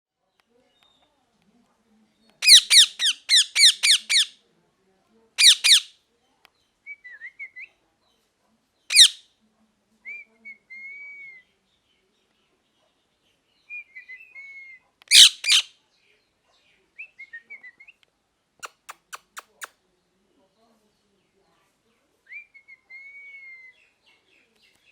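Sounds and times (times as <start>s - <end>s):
parrot shrill calls: 2.4s - 4.3s, 5.4s - 5.9s, 8.9s - 9.2s, 15.1s - 15.7s
parrot warbling chirps: 2.4s - 4.3s, 5.4s - 5.9s, 8.9s - 9.2s, 15.1s - 15.7s, 18.6s - 19.6s.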